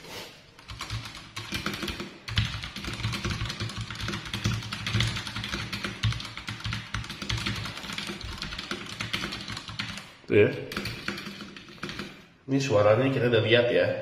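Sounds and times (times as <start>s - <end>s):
mechanical keyboard typing: 0.6s - 10.1s, 10.7s - 12.2s.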